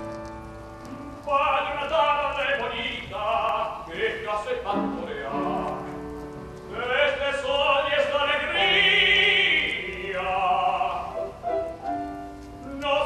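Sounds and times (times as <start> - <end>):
piano accompaniment: 0.0 - 13.0
operatic voice singing: 6.7 - 11.4.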